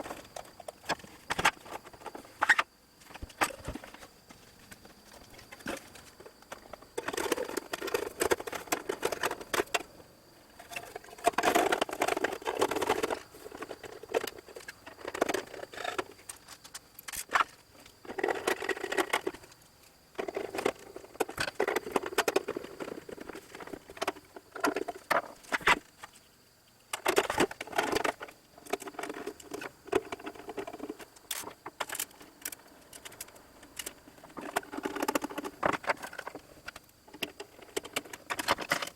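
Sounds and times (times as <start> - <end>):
clattering and clicking handling: 26.9 - 38.9.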